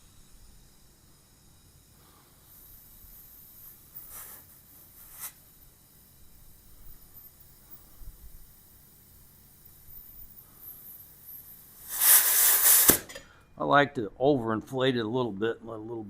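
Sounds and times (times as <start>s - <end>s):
compressed air hissing: 0.0s - 13.6s
tire beads popping onto rim: 11.2s - 13.4s.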